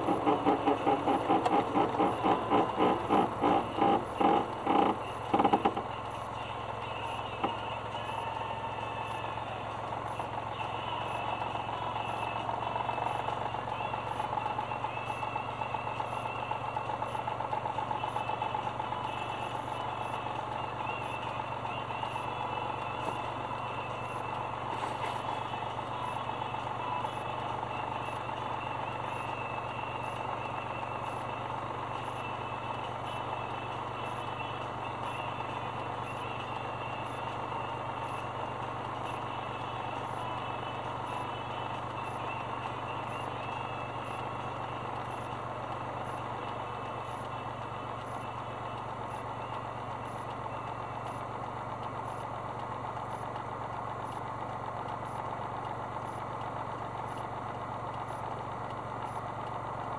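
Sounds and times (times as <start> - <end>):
wheel bearing whirring grind: 0.0 - 6.8.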